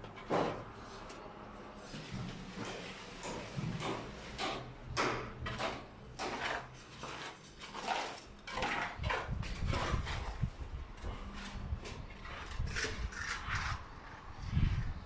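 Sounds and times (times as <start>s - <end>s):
trowel scraping plaster: 5.4s - 15.0s.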